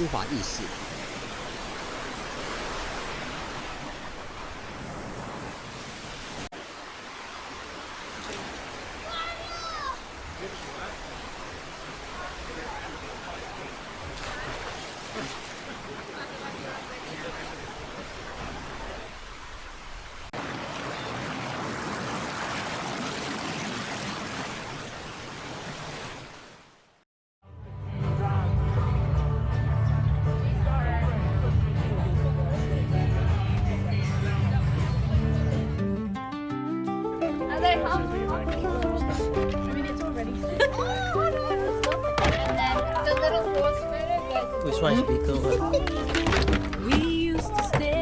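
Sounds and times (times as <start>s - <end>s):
falling water rushing: 0.0s - 26.8s, 37.6s - 48.0s
water cascading over rocks: 6.0s - 16.3s.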